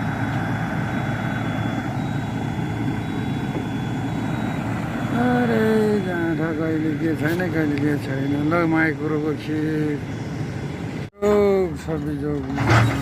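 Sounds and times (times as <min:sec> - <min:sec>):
excavator diesel engine running: 0:00.0 - 0:13.0
person speaking: 0:05.1 - 0:10.1, 0:11.1 - 0:12.8.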